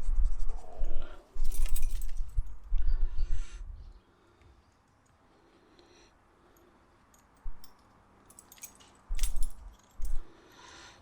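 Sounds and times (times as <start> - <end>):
small metal parts clinking: 1.4 - 2.6, 6.6 - 10.3.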